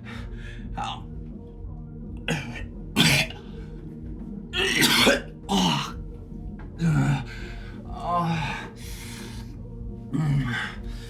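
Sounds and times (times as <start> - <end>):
man coughing and retching: 2.2 - 3.5, 4.6 - 6.0.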